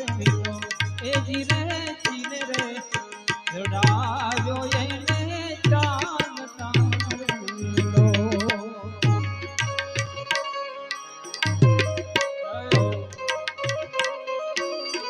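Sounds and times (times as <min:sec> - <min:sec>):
wavering melody instrument: 0:00.0 - 0:15.0
hand-drum beat: 0:05.7 - 0:10.4, 0:11.4 - 0:14.1.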